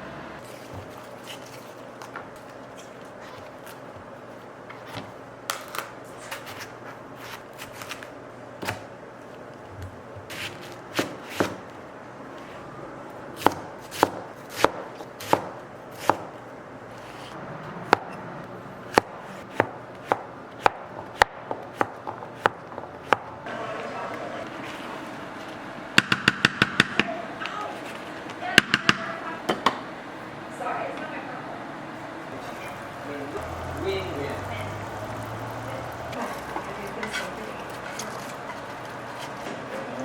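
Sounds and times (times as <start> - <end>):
knife chopping on cutting board: 10.3 - 11.7, 13.4 - 16.3, 18.9 - 23.3.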